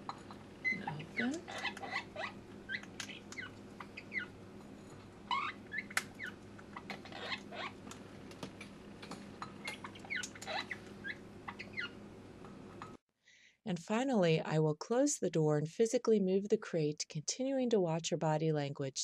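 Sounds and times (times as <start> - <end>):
faint steady hum: 0.0 - 15.0
parrot squeaky chirps: 0.6 - 4.4, 5.3 - 7.8, 9.6 - 12.0.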